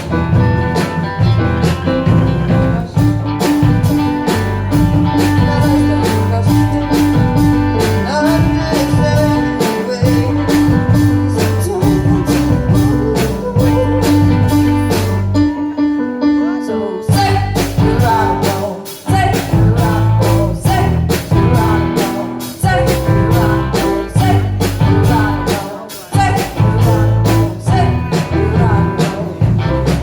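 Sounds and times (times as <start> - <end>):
drum kit beat: 0.0 - 16.0, 17.0 - 30.0
bass: 0.0 - 30.0
guitar: 0.0 - 30.0.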